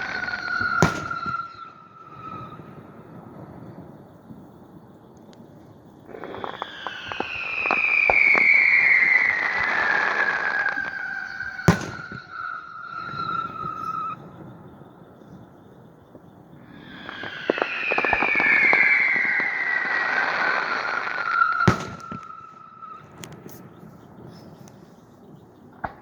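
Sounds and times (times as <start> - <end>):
crackling firework pops: 0.0 - 2.6, 6.1 - 14.2, 16.2 - 23.8, 25.7 - 26.0
whistling firework falling in pitch: 0.0 - 4.8, 6.0 - 26.0
sharp firework bang: 0.6 - 1.6, 11.6 - 12.5, 21.5 - 22.4.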